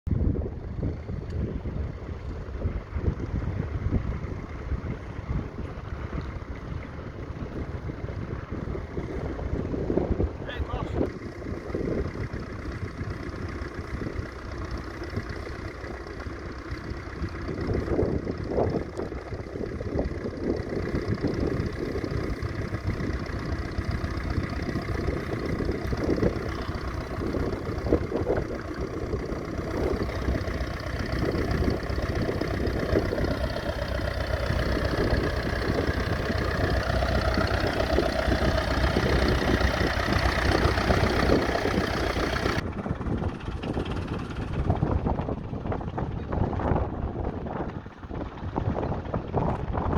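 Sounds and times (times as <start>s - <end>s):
tractor diesel engine running: 0.1s - 49.9s.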